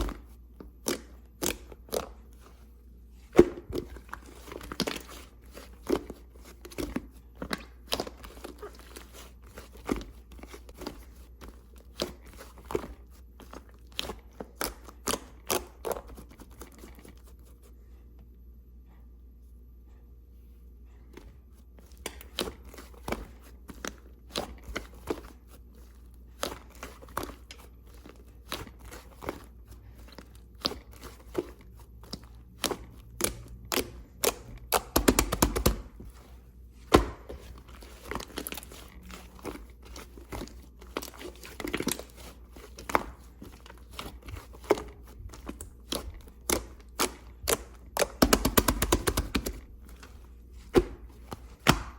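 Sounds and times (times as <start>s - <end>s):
slime clicking and crackling: 30.2s - 36.0s, 36.9s - 49.7s.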